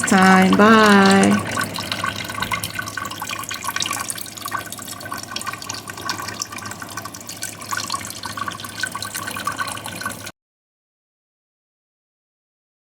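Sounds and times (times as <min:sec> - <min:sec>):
fountain water trickling and splashing: 0:00.0 - 0:10.3
water drips into basin: 0:00.0 - 0:10.3.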